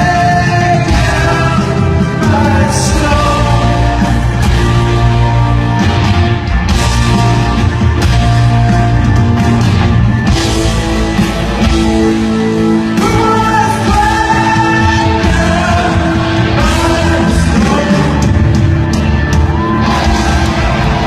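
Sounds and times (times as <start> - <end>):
person singing: 0.0 - 4.7, 12.9 - 18.7
live rock band playing: 0.0 - 21.0.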